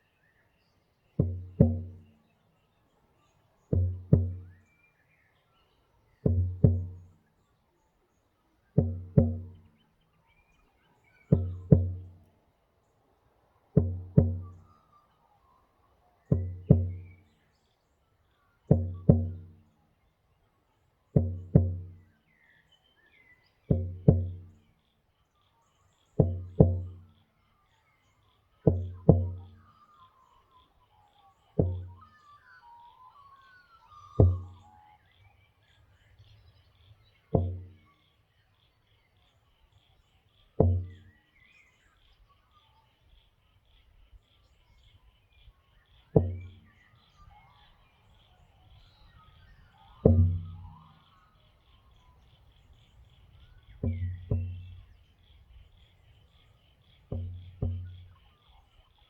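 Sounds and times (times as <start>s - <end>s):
birds chirping faintly: 0.0s - 59.0s
frame drum beats: 1.2s - 2.2s, 3.7s - 4.6s, 6.2s - 7.1s, 8.8s - 9.6s, 11.3s - 12.2s, 13.8s - 14.6s, 16.3s - 17.1s, 18.7s - 19.6s, 21.2s - 22.1s, 23.7s - 24.6s, 26.2s - 27.1s, 28.7s - 29.6s, 31.6s - 32.0s, 34.2s - 34.6s, 37.4s - 37.8s, 40.6s - 41.0s, 46.2s - 46.6s, 50.0s - 51.0s, 53.8s - 55.0s, 57.0s - 58.2s.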